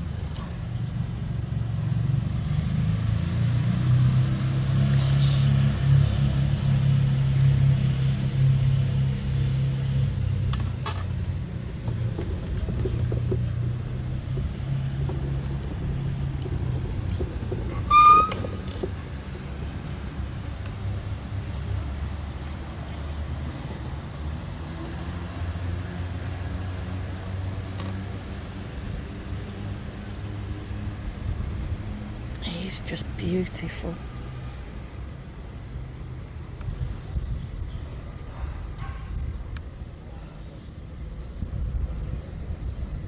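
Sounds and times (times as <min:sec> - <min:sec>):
low motor rumble: 0:00.0 - 0:43.0
short high-pitched call: 0:17.9 - 0:18.6.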